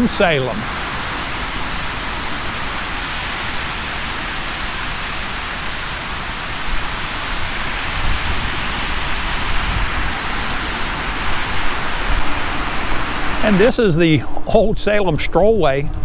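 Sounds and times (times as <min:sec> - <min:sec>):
waterfall rushing: 0:00.0 - 0:13.9.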